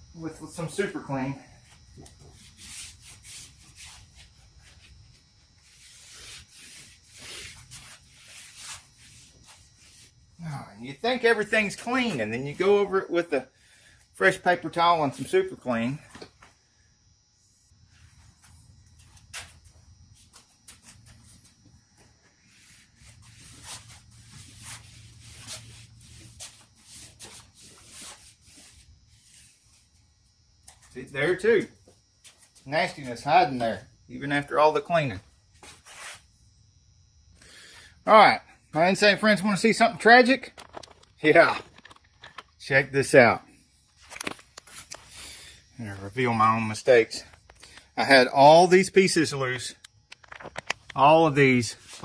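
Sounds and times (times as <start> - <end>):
paper towel rubbing a surface: 2.3 - 10.2, 22.4 - 29.9, 35.6 - 36.3.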